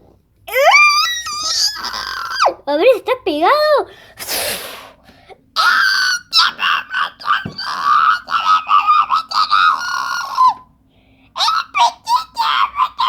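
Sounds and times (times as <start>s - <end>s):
high-pitched voice screaming: 0.5s - 2.6s, 5.6s - 10.6s, 11.4s - 13.0s.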